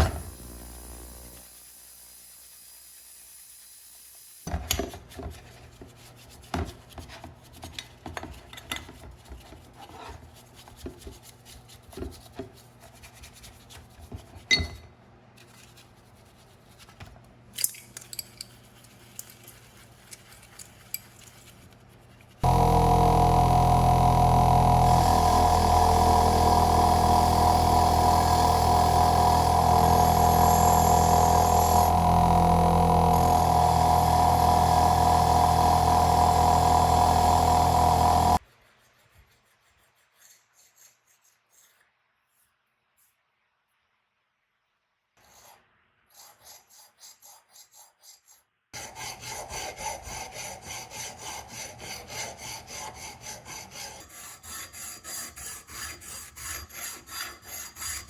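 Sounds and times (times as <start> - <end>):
power tool whining: 0.0 - 4.5, 22.4 - 38.4
small parts handled and rubbed: 15.4 - 22.5.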